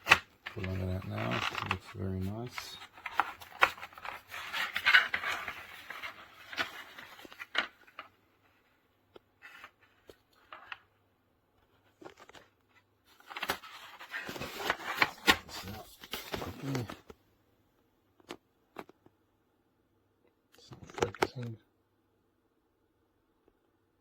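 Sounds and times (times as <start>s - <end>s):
packaging rustling and scraping: 0.0s - 8.1s, 13.1s - 17.0s.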